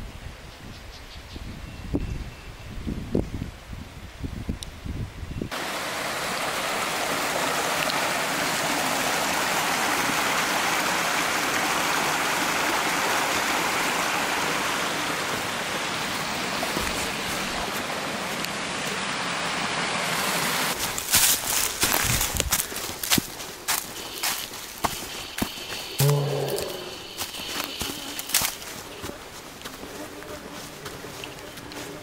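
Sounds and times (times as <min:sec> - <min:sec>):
mountain stream rushing: 0:05.5 - 0:32.0
footsteps on trail: 0:16.1 - 0:17.9, 0:20.7 - 0:32.0.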